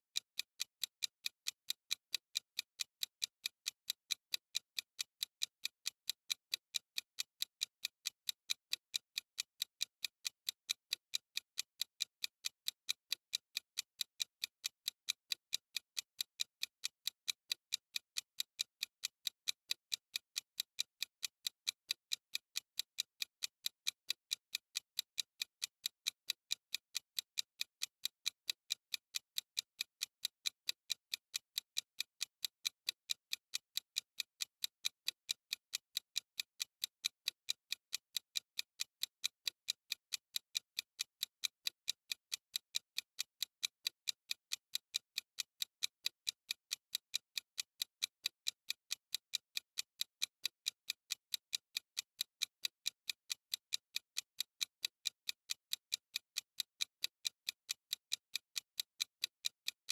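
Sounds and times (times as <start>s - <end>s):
clock ticking: 0.2s - 59.9s.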